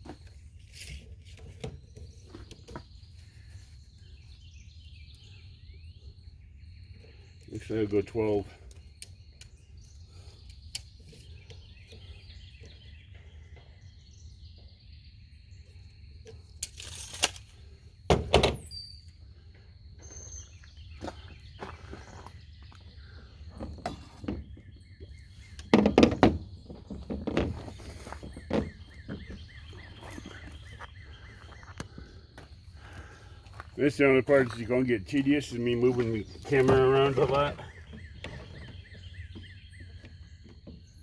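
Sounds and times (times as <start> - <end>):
faint birdsong: 0.0 - 41.0
plastic pipes knocking and clunking: 23.5 - 24.7, 25.4 - 29.4.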